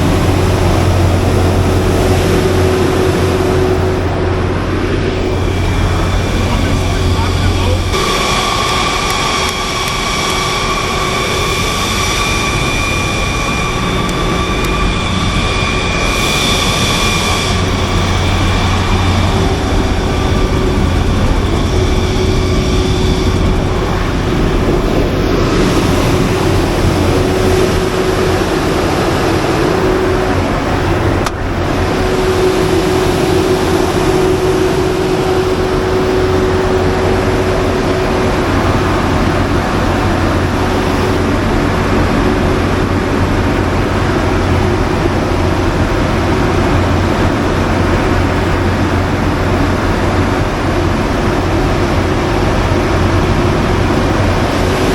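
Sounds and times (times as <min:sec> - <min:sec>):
generator drone: 0:00.0 - 0:54.9.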